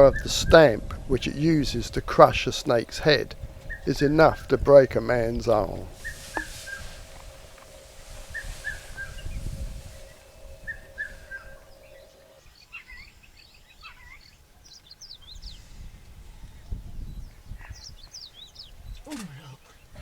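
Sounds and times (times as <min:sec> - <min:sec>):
birds chirping: 0:00.0 - 0:20.0
faint steady hum: 0:00.3 - 0:13.4
low rumble: 0:00.7 - 0:12.4.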